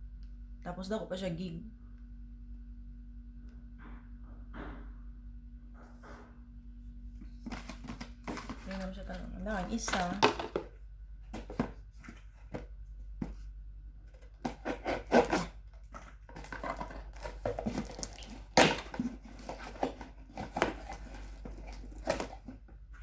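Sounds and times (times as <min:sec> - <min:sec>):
smartphone packaging rustling: 0:07.2 - 0:13.5, 0:14.1 - 0:22.6.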